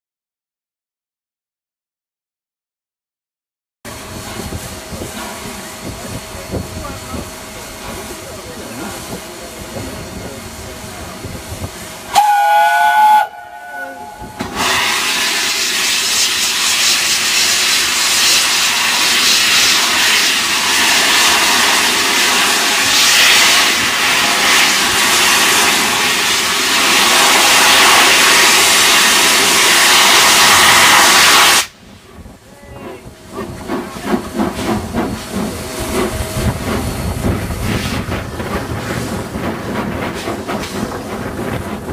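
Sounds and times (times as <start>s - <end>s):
steam locomotive whistle: 12.1s - 17.5s
hiss of escaping steam: 14.0s - 32.0s, 33.0s - 41.9s.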